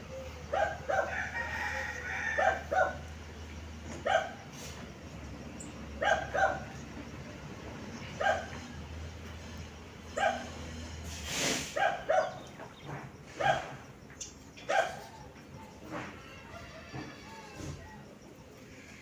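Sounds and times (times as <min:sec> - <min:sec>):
rooster crowing: 0:00.0 - 0:03.1, 0:16.0 - 0:18.0
dog barking: 0:00.4 - 0:01.2, 0:02.3 - 0:03.1, 0:04.0 - 0:04.4, 0:06.0 - 0:06.8, 0:08.2 - 0:08.6, 0:10.1 - 0:10.5, 0:11.7 - 0:12.5, 0:13.4 - 0:13.8, 0:14.6 - 0:15.3.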